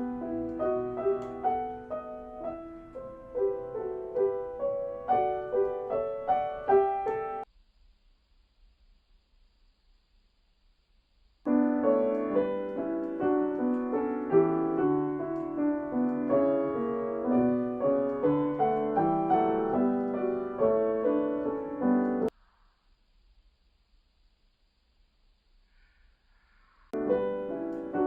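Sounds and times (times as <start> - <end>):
piano playing fast chords: 0.0 - 7.5, 11.5 - 22.3, 27.0 - 28.0.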